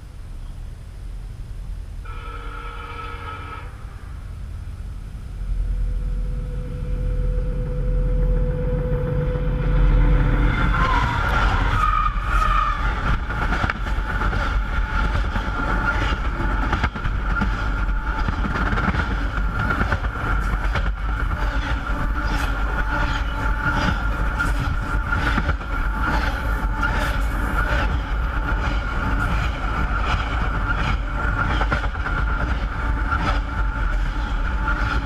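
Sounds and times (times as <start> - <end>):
train low rumble: 0.0 - 35.0
high-pitched ring: 5.8 - 10.5
wheel clatter over rails: 10.3 - 35.0.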